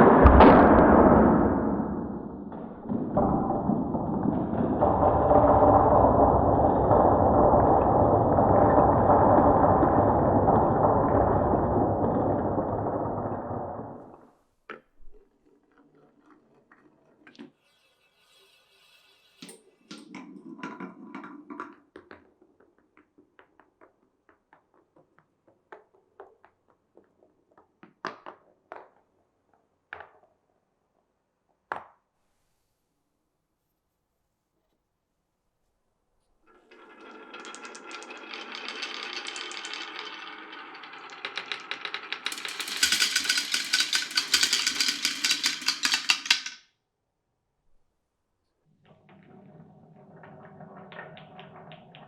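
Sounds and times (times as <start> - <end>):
marbles rolling rumble: 0.0 - 14.3, 36.5 - 46.7, 48.8 - 52.0
marbles clicking on track: 36.5 - 46.7.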